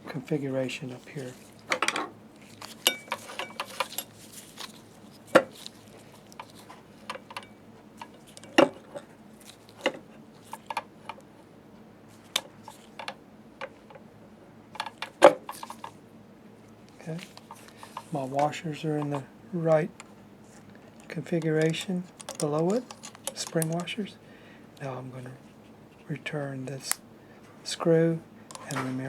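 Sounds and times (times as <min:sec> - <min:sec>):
small metallic clicks and clinks: 0:01.8 - 0:04.8, 0:21.0 - 0:24.0, 0:28.5 - 0:29.0.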